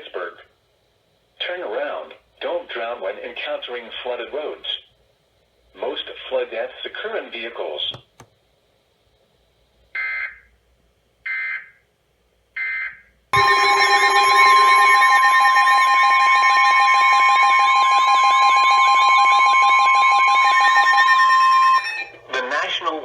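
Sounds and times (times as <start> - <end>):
loud steady alert alarm: 13.4 - 22.2
screechy data bursts: 13.4 - 22.2.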